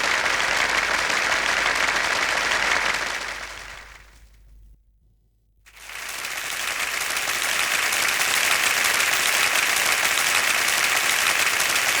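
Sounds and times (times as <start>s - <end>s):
crowd applause: 0.0s - 4.1s, 5.7s - 12.0s.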